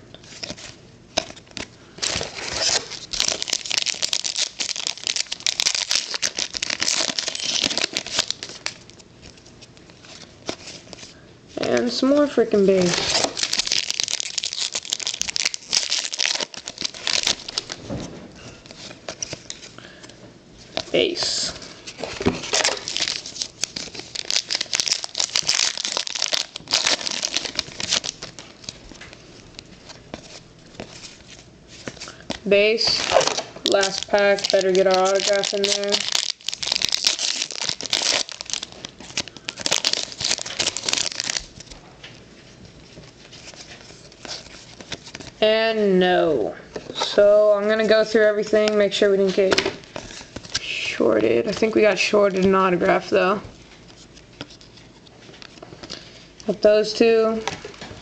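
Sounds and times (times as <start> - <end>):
cards rustling and snapping: 0.2 - 42.2, 42.9 - 45.4, 53.8 - 56.5
foil wrapper crinkling: 0.3 - 11.0, 12.6 - 17.8, 21.8 - 41.8.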